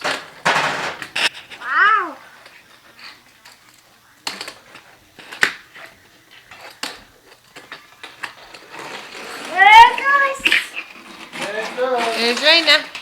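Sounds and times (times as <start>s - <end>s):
plastic toys knocking together: 0.0s - 1.3s, 10.0s - 13.0s.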